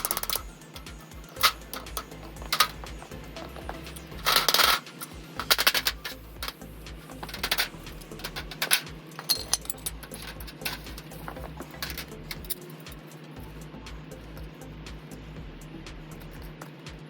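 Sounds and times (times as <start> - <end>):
hard objects clinking: 0.0 - 13.2.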